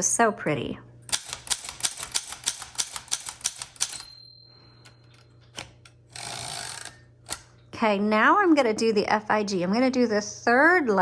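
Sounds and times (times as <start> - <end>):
typewriter keys clacking: 1.1 - 4.1
typewriter carriage return: 1.1 - 4.2
typewriter margin bell ringing: 1.6 - 5.4.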